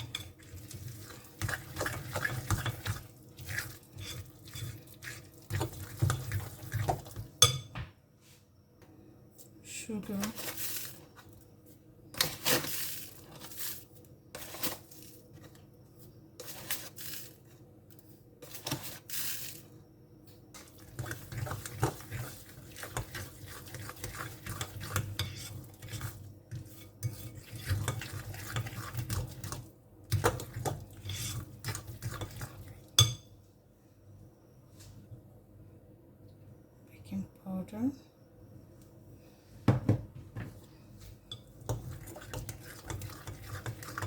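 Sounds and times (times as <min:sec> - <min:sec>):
utensil stirring in mixing bowl: 0:00.0 - 0:07.6, 0:20.6 - 0:33.2, 0:41.0 - 0:44.0.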